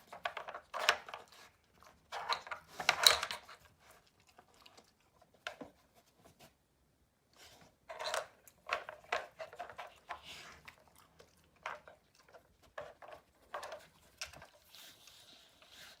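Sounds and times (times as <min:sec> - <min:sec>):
dog chewing treats: 0:08.3 - 0:14.7.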